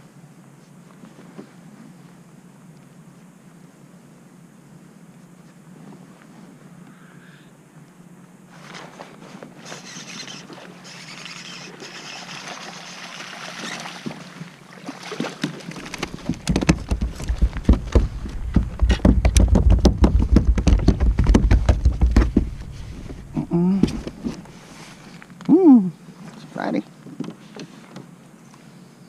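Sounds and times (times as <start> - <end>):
rapid knocks on a kayak: 15.3 - 24.4.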